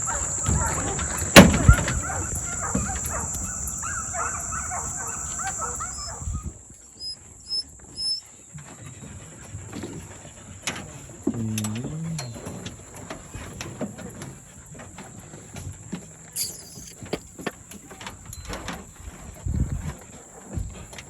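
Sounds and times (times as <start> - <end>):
low drawn-out call: 0.0 - 6.4, 11.3 - 12.6
hounds baying in the distance: 0.0 - 8.3
short bird chirps: 16.4 - 17.0.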